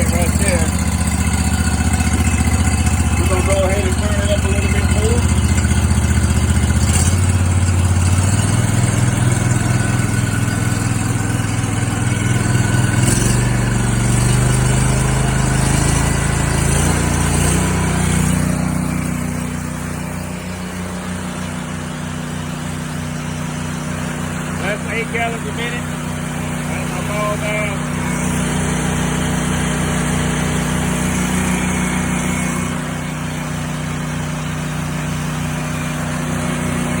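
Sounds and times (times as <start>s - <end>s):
engine running under load: 0.0s - 37.0s.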